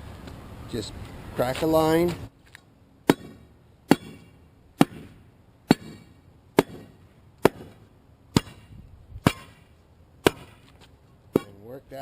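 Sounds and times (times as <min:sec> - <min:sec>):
pry bar striking concrete: 0:03.0 - 0:12.0.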